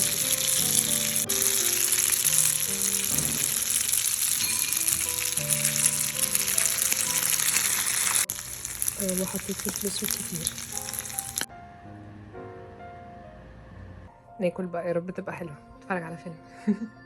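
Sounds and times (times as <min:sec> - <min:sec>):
food sizzling in a frying pan: 0:00.0 - 0:11.5
music of slow held notes: 0:00.0 - 0:14.7.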